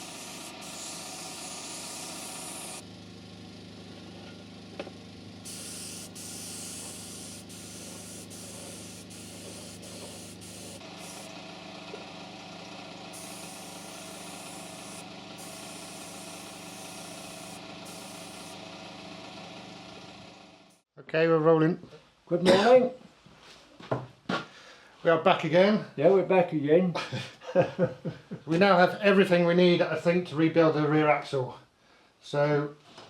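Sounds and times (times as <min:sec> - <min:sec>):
air gun hissing bursts: 0:00.0 - 0:02.8, 0:05.5 - 0:11.4, 0:13.1 - 0:18.6
motor hum: 0:00.0 - 0:20.8.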